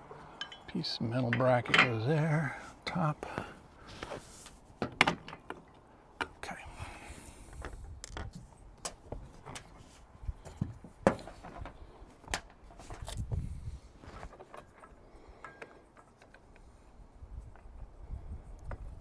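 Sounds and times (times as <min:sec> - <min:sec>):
metal brackets clicking and knocking: 0:00.3 - 0:02.4.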